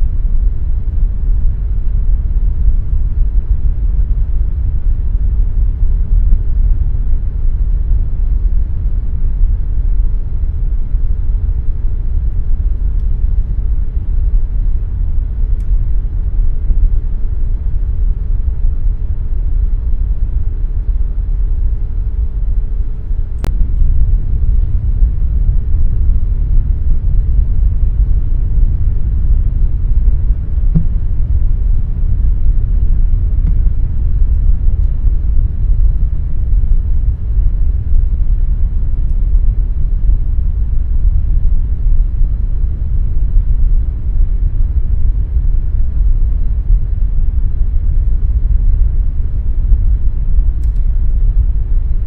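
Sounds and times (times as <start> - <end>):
air conditioner running: 0.0 - 52.0
faint hum: 0.0 - 52.0
sharp click: 30.7 - 31.0, 50.6 - 50.8.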